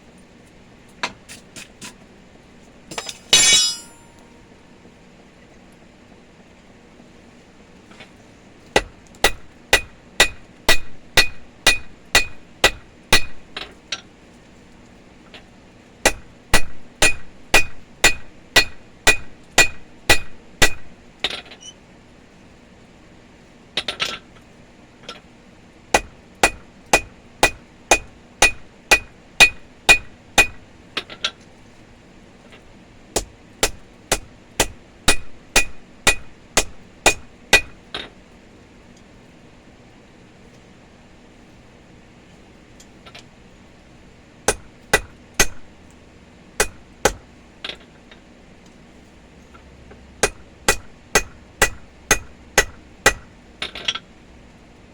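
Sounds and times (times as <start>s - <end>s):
hammer striking steel on anvil: 2.9s - 4.4s, 9.8s - 13.4s, 16.1s - 20.8s, 26.0s - 30.6s, 33.6s - 37.7s, 50.2s - 53.3s.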